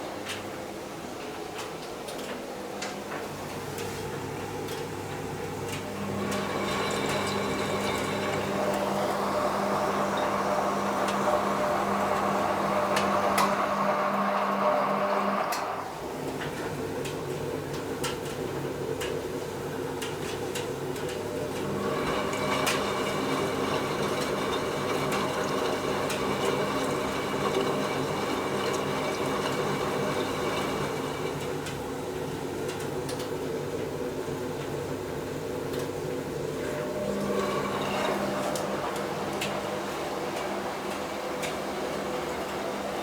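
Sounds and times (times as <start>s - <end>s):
washing machine hum: 0.0s - 43.0s
motor whine: 5.8s - 16.0s.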